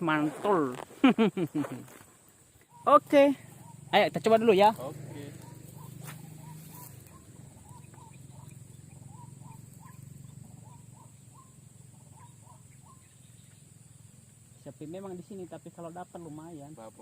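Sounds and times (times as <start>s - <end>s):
faint bird chirps: 2.4s - 15.5s.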